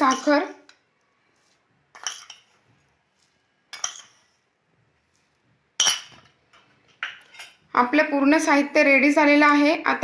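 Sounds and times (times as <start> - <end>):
metal spoon clinking against dish: 0.0 - 0.8, 1.9 - 2.6, 3.7 - 4.3, 5.8 - 6.4.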